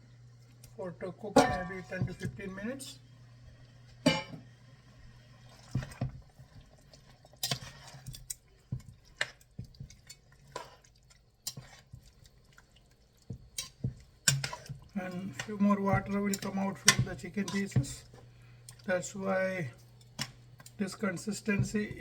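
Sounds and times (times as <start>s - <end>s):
low steady hum: 0.0s - 7.9s, 12.5s - 22.0s.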